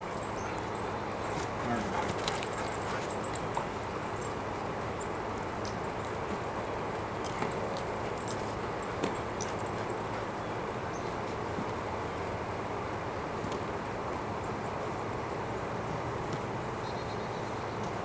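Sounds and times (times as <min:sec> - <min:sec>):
dogs moving about: 0:00.1 - 0:10.4
faint jingling: 0:00.4 - 0:04.6, 0:07.2 - 0:11.2.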